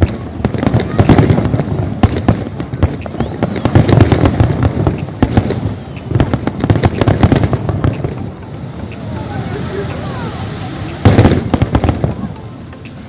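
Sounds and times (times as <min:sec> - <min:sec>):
fireworks bangs and crackles: 0:00.0 - 0:13.0
deep firework booms: 0:11.0 - 0:12.2.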